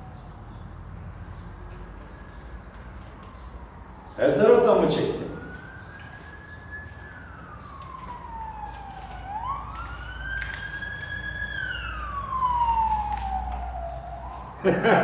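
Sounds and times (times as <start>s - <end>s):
siren wailing: 4.3s - 15.0s.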